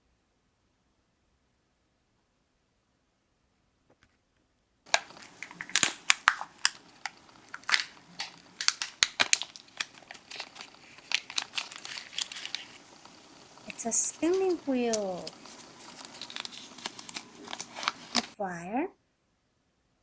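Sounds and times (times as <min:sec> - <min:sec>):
plastic wrapping crinkling: 0:04.9 - 0:18.4.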